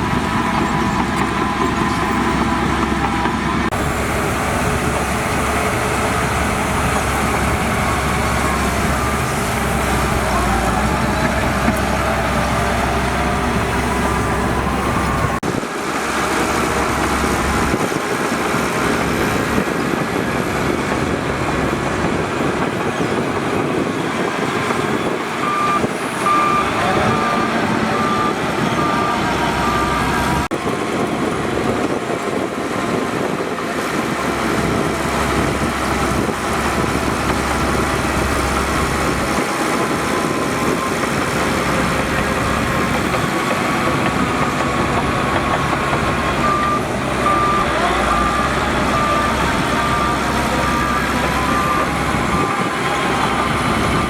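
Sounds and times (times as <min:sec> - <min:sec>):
heavy machinery running: 0:00.0 - 0:54.0
reversing alarm beeping: 0:24.8 - 0:30.5, 0:45.5 - 0:54.0.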